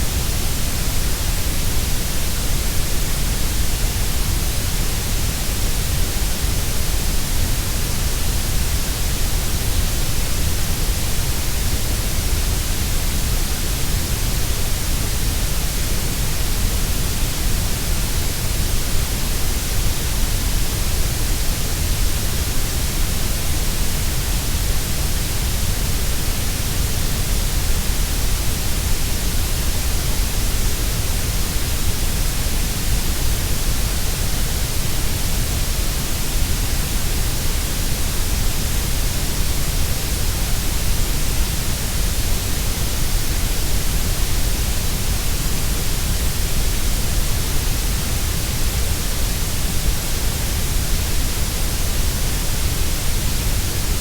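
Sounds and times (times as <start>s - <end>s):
steady grey noise hiss: 0.0s - 54.0s.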